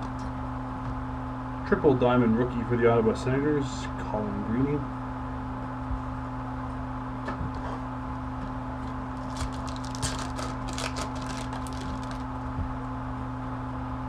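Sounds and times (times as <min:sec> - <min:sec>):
low electrical hum: 0:00.0 - 0:14.0
trading cards rustling and clicking: 0:09.2 - 0:12.3.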